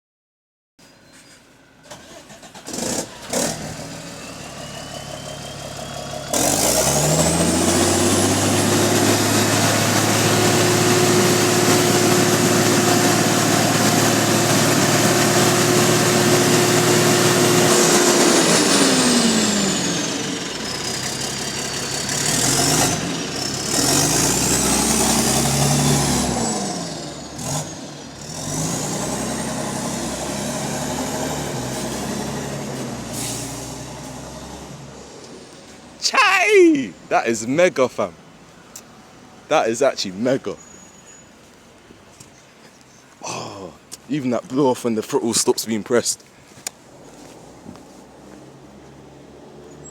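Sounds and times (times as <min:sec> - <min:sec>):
bus diesel engine revving: 0:01.9 - 0:35.5.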